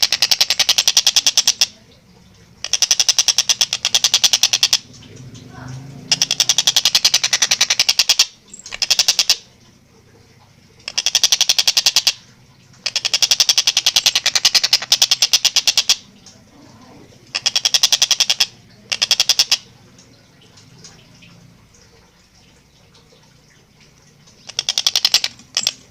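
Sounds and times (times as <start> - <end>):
kingfisher chattering call: 2.6 - 4.9, 5.5 - 9.5, 10.9 - 12.2, 12.8 - 16.1, 17.3 - 19.7, 24.4 - 25.8.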